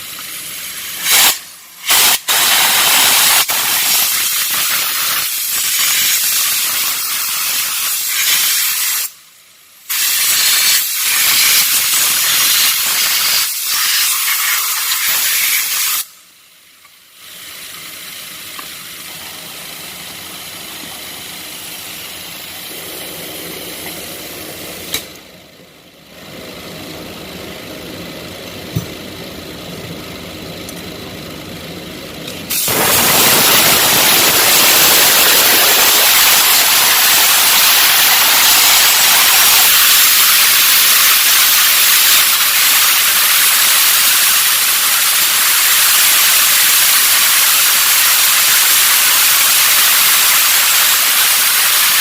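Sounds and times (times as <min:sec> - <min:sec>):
air jet hissing: 0:00.1 - 0:09.1, 0:17.2 - 0:25.2, 0:32.5 - 0:52.0.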